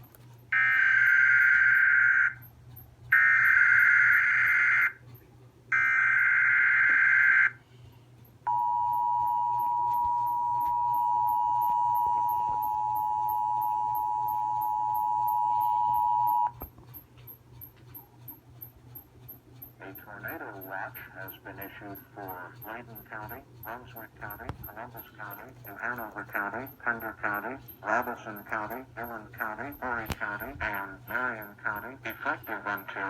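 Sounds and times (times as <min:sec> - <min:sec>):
two-tone attention signal: 0:08.5 - 0:16.6.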